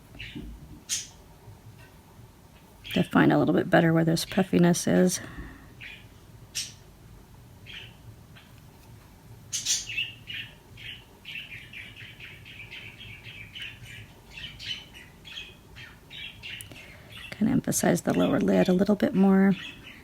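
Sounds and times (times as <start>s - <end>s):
small bird chirping: 0.1s - 1.2s, 5.8s - 6.8s, 7.6s - 8.6s, 9.5s - 18.7s.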